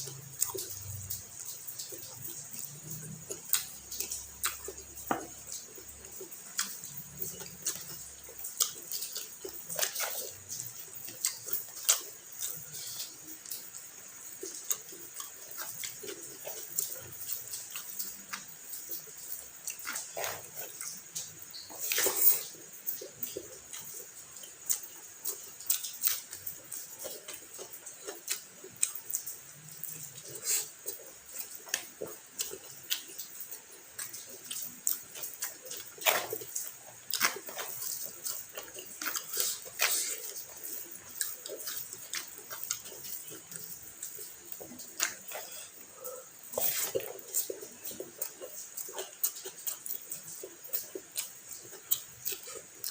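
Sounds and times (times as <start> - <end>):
chewing with wet mouth clicks: 0.0 - 52.9
lip smacks: 14.2 - 29.2, 30.2 - 52.9.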